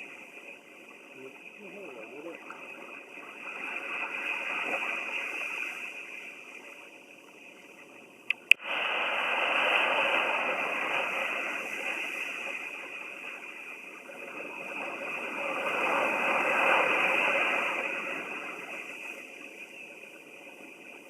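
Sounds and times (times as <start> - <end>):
sea waves washing in: 0.0 - 21.0
sharp clicks: 8.3 - 8.6.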